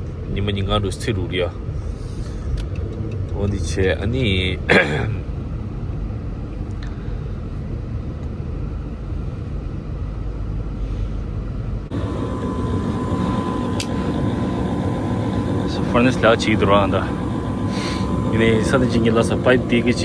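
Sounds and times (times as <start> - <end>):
vehicle rumble from inside: 1.4 - 4.6
thin high whine: 11.9 - 20.0.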